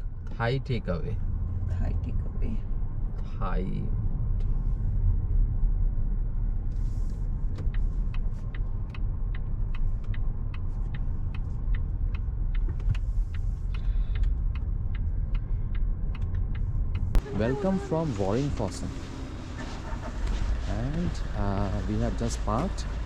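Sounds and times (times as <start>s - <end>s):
car cabin rumble: 0.0s - 23.0s.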